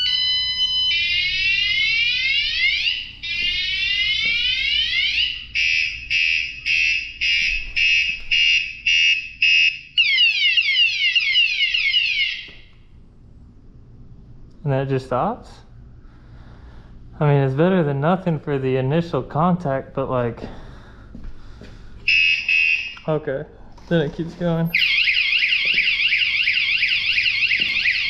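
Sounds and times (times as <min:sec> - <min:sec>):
bike alarm wailing and beeping: 0:00.0 - 0:12.7, 0:22.0 - 0:23.1, 0:24.7 - 0:28.0.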